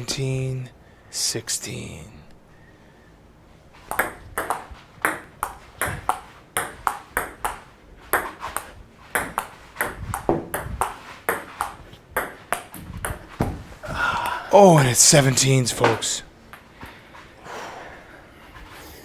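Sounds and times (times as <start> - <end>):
ping pong ball hitting paddles: 3.8 - 15.2, 15.8 - 16.7.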